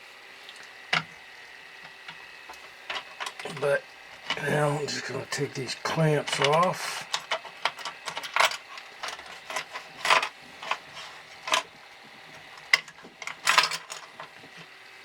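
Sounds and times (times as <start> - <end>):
clamps clicking and knocking: 2.9 - 3.6, 6.2 - 11.7.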